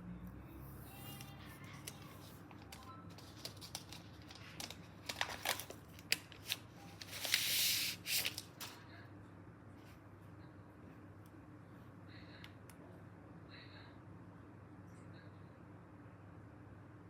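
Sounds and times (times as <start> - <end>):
packaging clicks and rustles: 1.1 - 8.8.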